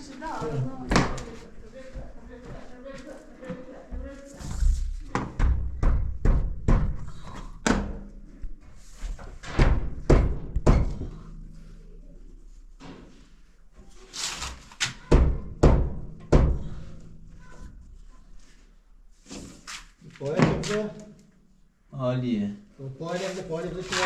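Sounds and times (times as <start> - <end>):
hammer knocking on wooden door: 5.2 - 7.1, 9.6 - 11.0, 15.1 - 16.7.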